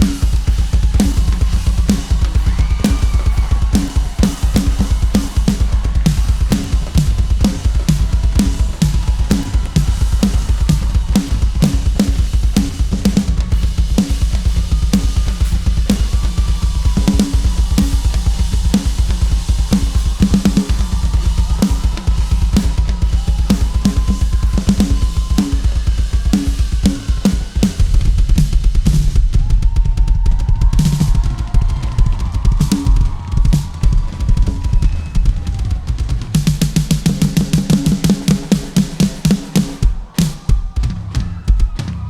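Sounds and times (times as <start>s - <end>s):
heavy bass line: 0.0s - 29.7s
drum kit beat: 0.0s - 42.0s.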